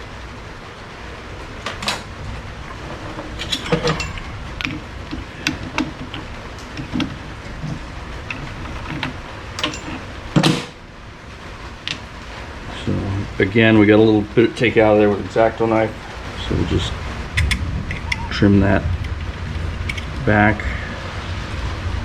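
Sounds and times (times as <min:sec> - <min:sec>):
background hiss: 0:00.0 - 0:22.0
small tools clicking and knocking: 0:02.9 - 0:10.6.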